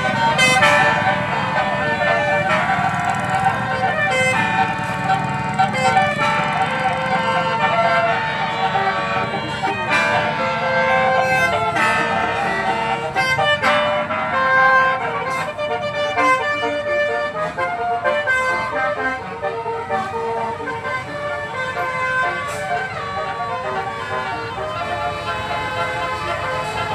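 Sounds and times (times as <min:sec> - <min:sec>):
bus engine running: 0:00.0 - 0:26.9
musical bus horn melody: 0:00.0 - 0:26.9.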